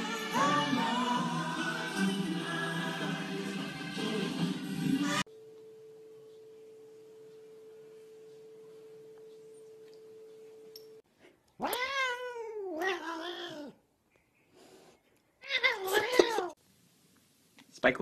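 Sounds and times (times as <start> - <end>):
faint steady hum: 5.2 - 11.6
cat yowling: 11.6 - 13.8, 15.4 - 16.6.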